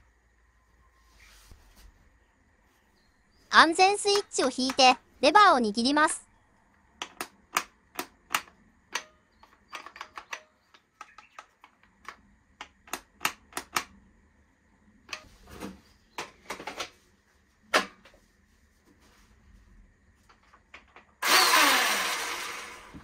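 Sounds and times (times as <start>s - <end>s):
plastic switch clicks: 7.0s - 11.5s.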